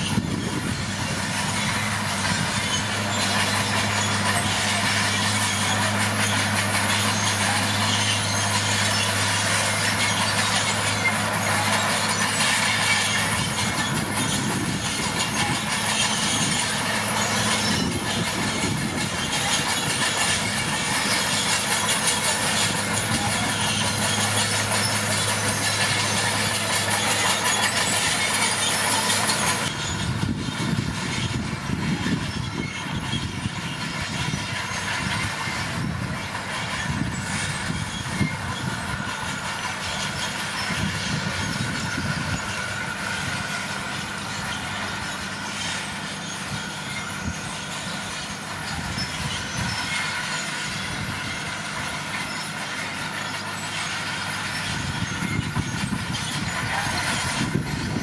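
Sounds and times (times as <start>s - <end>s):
diesel engine running: 0.0s - 58.0s
steel tracks clattering: 0.0s - 58.0s.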